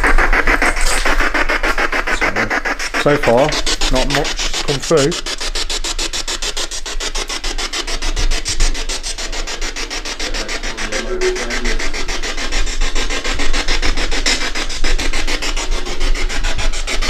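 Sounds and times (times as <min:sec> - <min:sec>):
radio static chopped bursts: 0:00.0 - 0:13.0.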